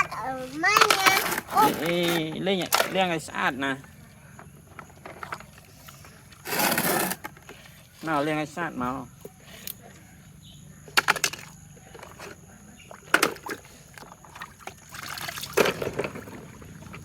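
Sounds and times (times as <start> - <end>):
water splashing and sloshing: 0.0 - 6.5, 10.9 - 17.0.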